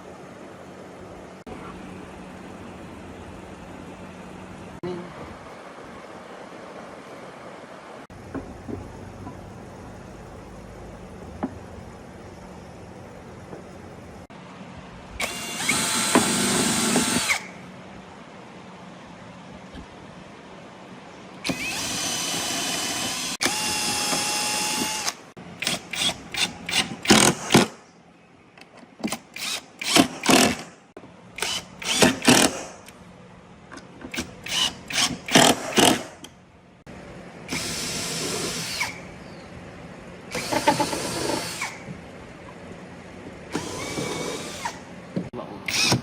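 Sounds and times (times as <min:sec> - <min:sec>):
electric power tool running: 0:15.2 - 0:17.5, 0:21.4 - 0:27.5, 0:40.3 - 0:41.8, 0:43.5 - 0:44.8.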